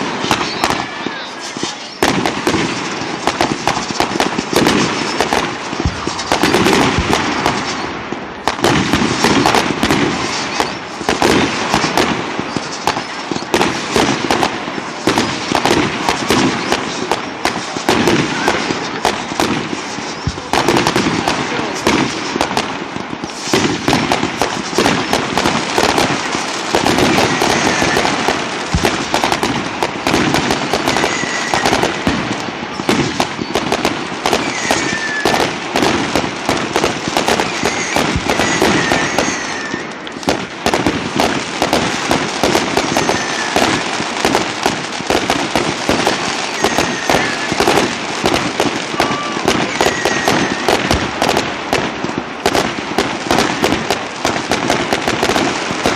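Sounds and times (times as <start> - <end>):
firework whistles: 0.0 - 8.0, 8.9 - 51.4
fireworks crackling and banging: 0.0 - 55.9.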